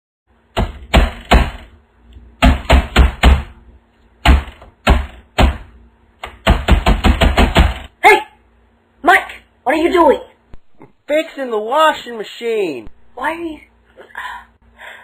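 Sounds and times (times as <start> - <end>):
loud knocking: 0.5 - 1.7, 2.4 - 3.6, 4.2 - 5.7, 6.3 - 7.9.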